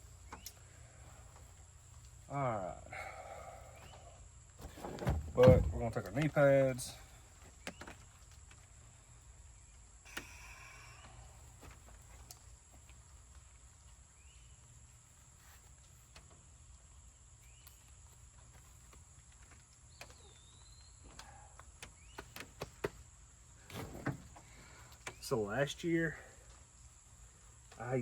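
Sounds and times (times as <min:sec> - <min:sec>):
high insect drone: 0:08.6 - 0:28.0
bird chirps: 0:19.9 - 0:22.4.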